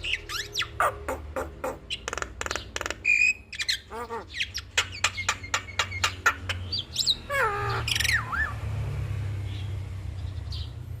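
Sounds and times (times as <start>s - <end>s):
bird song with clicks and whistles: 0.0s - 7.2s.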